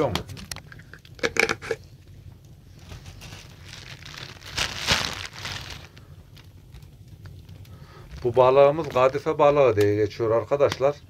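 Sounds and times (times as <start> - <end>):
plastic crinkling: 2.7 - 7.6.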